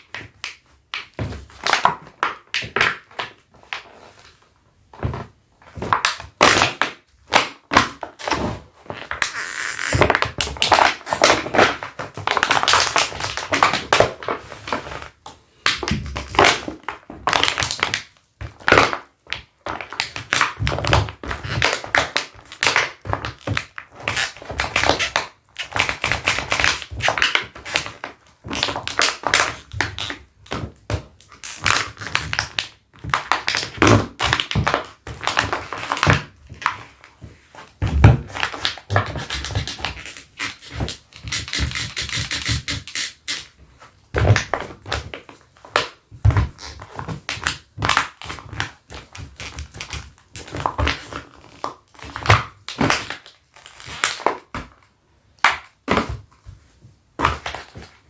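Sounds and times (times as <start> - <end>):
leather boots squeaking: 8.3 - 10.4.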